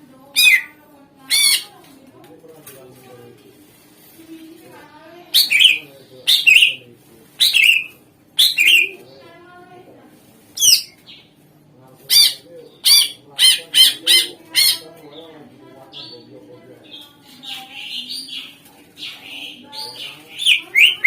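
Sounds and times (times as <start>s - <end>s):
bird singing sharp high calls: 5.4s - 6.8s, 7.4s - 9.0s, 19.2s - 21.0s.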